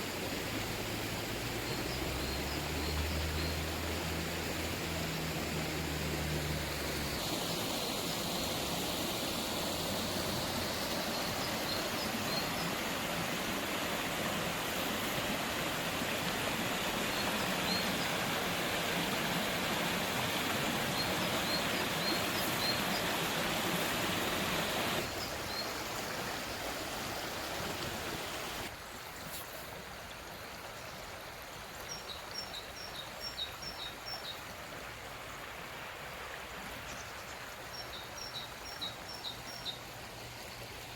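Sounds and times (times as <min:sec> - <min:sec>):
stream water running: 0:00.0 - 0:40.9
small birds chirping: 0:20.8 - 0:23.4.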